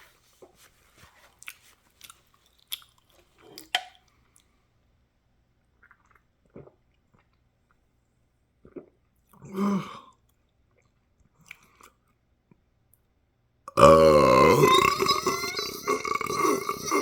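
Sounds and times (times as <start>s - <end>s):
person chewing food: 1.2s - 3.8s.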